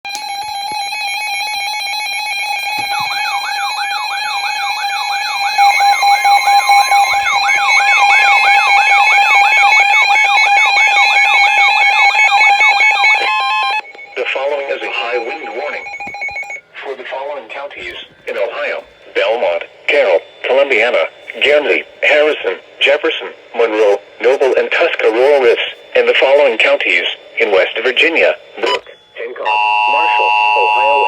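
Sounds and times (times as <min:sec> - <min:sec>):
steady high electronic tone: 0:00.1 - 0:31.0
siren sweep rising and falling: 0:00.9 - 0:14.2.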